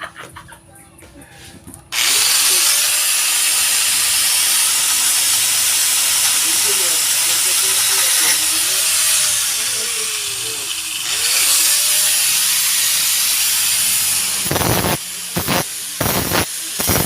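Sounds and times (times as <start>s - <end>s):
welding arc hissing: 1.9s - 17.0s.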